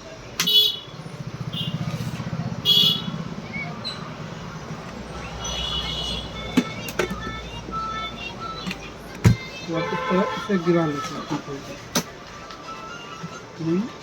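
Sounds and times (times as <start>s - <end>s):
vehicle engine running: 0.0s - 9.7s.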